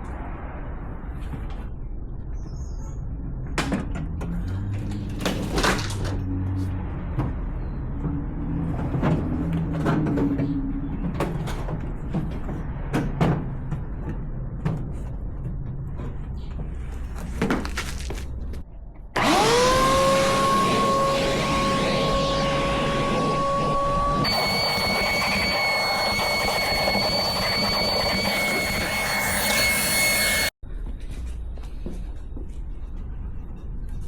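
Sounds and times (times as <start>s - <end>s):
loud steady hiss with rising tone: 19.2s - 30.5s.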